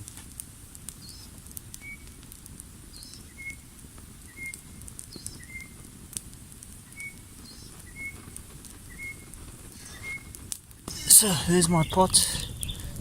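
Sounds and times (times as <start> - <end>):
campfire crackling and popping: 0.0 - 13.0
bird whistling: 1.0 - 2.1, 3.0 - 3.6, 4.3 - 5.8, 6.8 - 8.2, 8.9 - 10.3, 11.7 - 12.9
bird chirp: 2.9 - 3.6, 4.2 - 5.8, 6.8 - 8.2, 8.8 - 10.3, 10.9 - 13.0.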